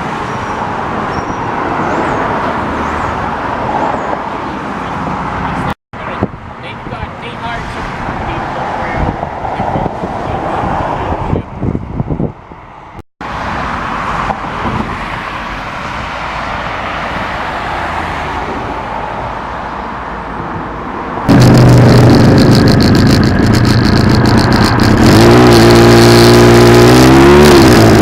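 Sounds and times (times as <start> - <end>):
road noise: 0.0 - 28.0
wind rush: 7.8 - 13.0, 21.1 - 26.2
loud droning engine: 21.3 - 28.0
motorcycle engine: 21.3 - 28.0.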